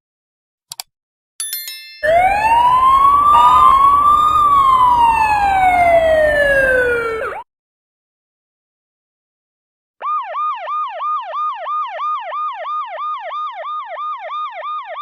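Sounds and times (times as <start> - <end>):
emergency siren wailing: 2.0 - 7.4
low rumble: 2.1 - 7.4.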